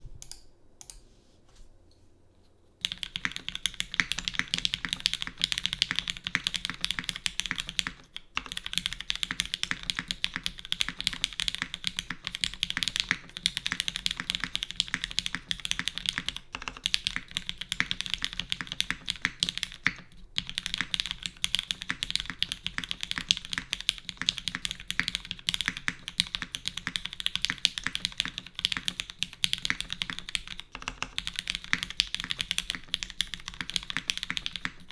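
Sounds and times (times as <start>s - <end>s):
fast mechanical keyboard typing: 2.8s - 34.9s.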